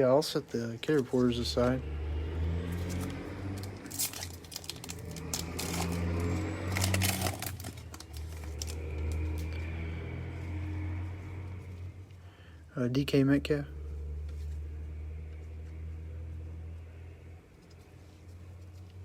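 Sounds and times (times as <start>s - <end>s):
low steady hum: 0.0s - 19.0s
wrapper crinkling: 2.8s - 9.6s.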